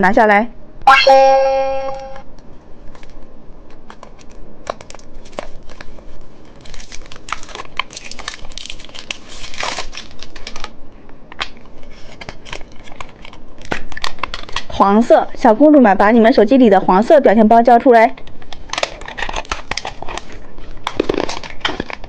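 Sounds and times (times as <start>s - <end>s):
plastic packaging crinkling: 3.8s - 10.8s, 11.4s - 14.7s, 18.2s - 22.0s.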